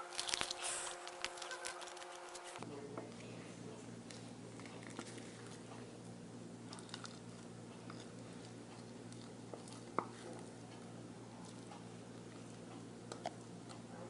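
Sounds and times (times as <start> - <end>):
handling noises: 0.0 - 2.6
steady low hum: 0.0 - 14.0.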